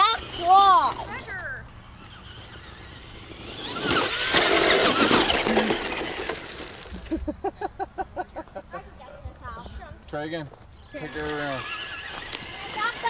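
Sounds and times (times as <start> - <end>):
rc car motor whine: 0.0 - 7.1, 10.7 - 13.0.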